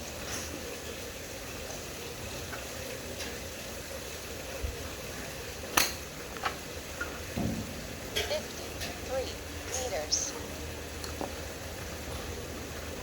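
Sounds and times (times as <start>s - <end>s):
golf club striking ball: 5.7s - 6.1s.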